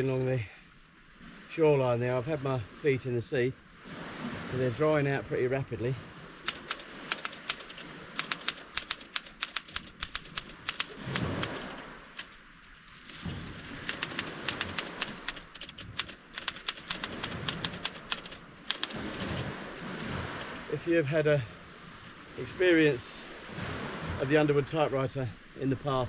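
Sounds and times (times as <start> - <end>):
typewriter keys clacking: 6.5 - 13.2, 13.8 - 19.5.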